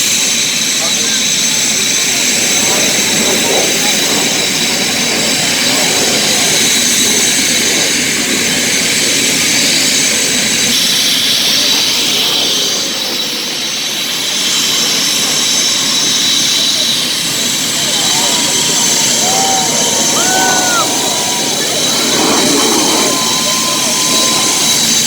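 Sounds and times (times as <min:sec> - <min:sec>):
jet engines roaring: 0:00.0 - 0:25.0
high whine: 0:10.6 - 0:25.0.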